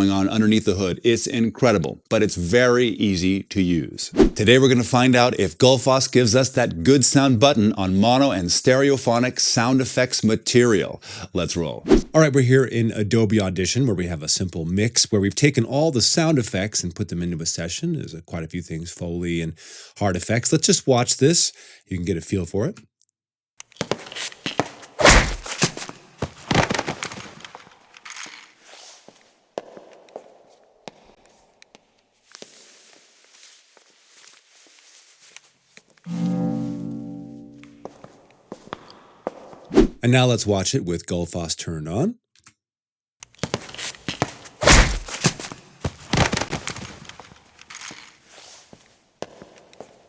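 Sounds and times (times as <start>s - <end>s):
footsteps: 23.8s - 27.5s, 43.4s - 47.4s
heavy thumps and impacts: 25.0s - 25.8s, 44.6s - 45.4s
heavy low thump of a hit: 44.7s - 45.1s.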